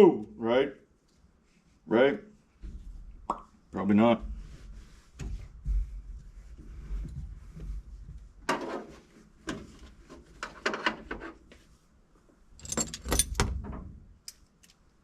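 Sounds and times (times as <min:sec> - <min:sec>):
jingling clatter: 0:12.6 - 0:13.4
metal hardware clinking: 0:12.6 - 0:13.6.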